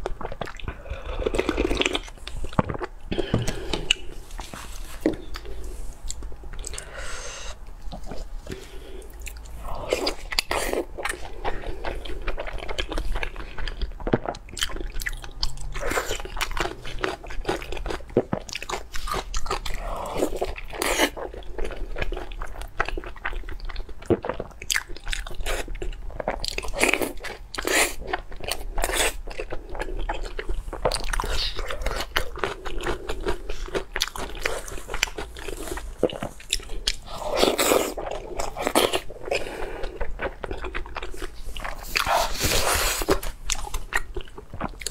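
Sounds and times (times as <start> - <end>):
person chewing crunchy food: 0.0 - 44.9.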